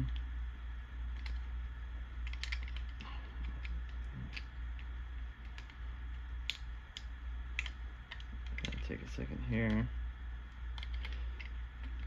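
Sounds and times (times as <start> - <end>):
steady low hum: 0.0 - 12.0
plastic figures clicking and tapping: 6.4 - 9.0.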